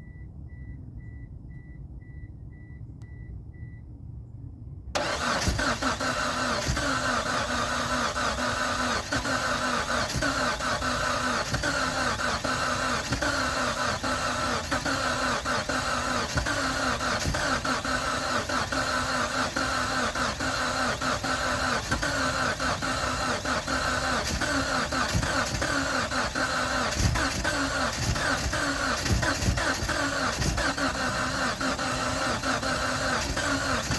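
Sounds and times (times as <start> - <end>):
starter motor cranking engine: 5.0 - 33.9.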